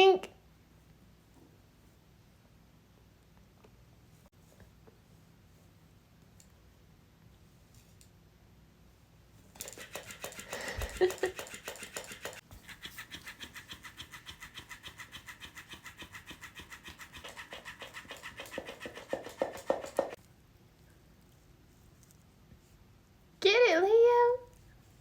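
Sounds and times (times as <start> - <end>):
toy motor whining: 9.6 - 20.2
toy tail slapping: 9.6 - 20.2.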